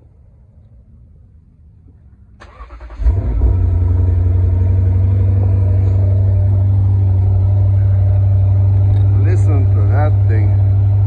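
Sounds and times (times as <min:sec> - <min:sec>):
car starter cranking: 0:02.4 - 0:06.5
car engine revving and idling: 0:02.5 - 0:11.0.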